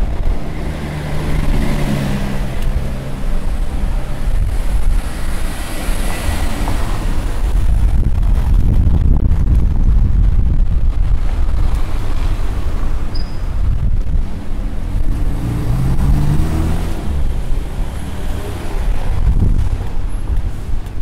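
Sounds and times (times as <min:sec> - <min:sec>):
vehicle engine passing: 0:00.0 - 0:07.2, 0:14.6 - 0:19.8
street traffic: 0:00.0 - 0:21.0
wind buffeting microphone: 0:00.0 - 0:21.0.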